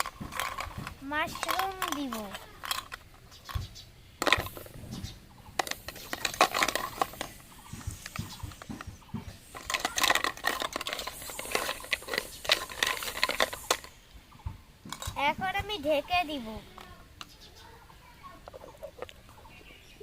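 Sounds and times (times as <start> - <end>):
toy food clicking in toy pan: 0.0 - 4.7.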